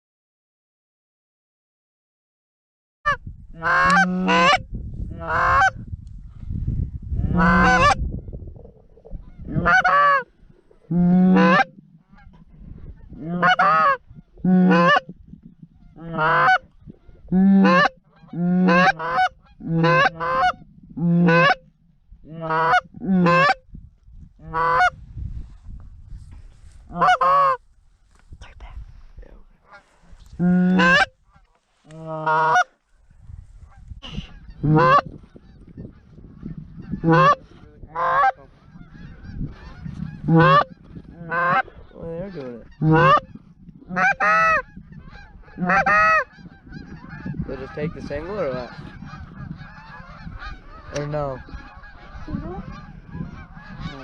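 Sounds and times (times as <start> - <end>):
goose honking: 3.1 - 5.8, 7.2 - 8.0, 9.0 - 23.6, 24.4 - 25.0, 26.9 - 27.6, 29.6 - 32.7, 33.6 - 54.0.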